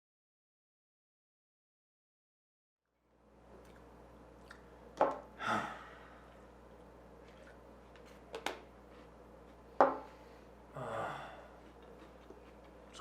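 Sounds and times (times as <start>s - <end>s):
heavy sigh: 5.4s - 6.3s, 10.1s - 11.6s.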